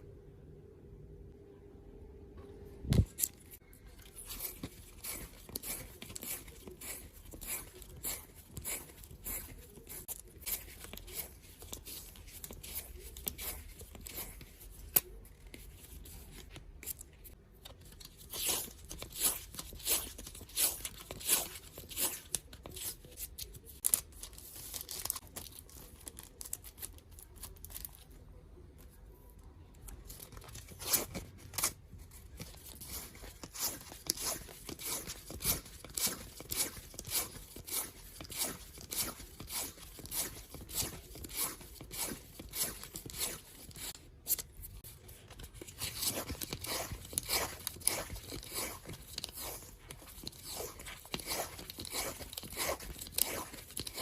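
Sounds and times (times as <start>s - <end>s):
paper crinkling: 29.8s - 54.0s.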